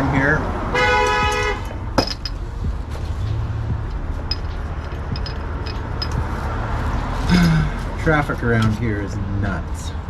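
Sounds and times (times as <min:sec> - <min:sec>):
road traffic rumble: 0:00.0 - 0:10.0
vehicle horn honking: 0:00.7 - 0:01.7.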